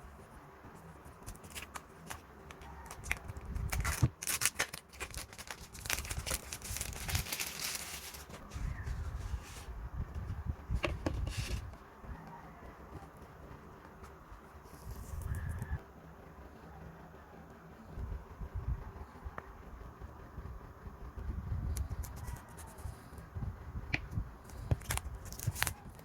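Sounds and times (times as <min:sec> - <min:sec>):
plastic wrap tearing and crinkling: 0:01.2 - 0:08.5, 0:24.7 - 0:25.8.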